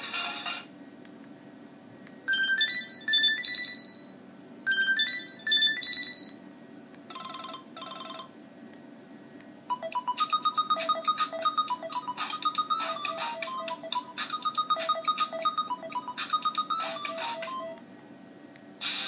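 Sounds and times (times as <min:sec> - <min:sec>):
mobile phone ringtone: 0:02.3 - 0:04.1, 0:04.7 - 0:06.3, 0:07.1 - 0:08.3, 0:09.7 - 0:17.8.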